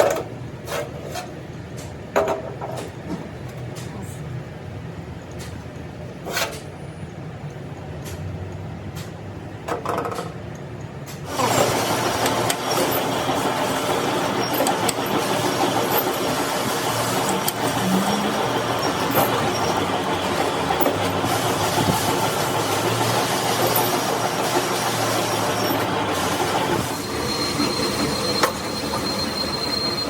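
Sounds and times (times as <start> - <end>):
loud steady machine noise: 11.3 - 30.0.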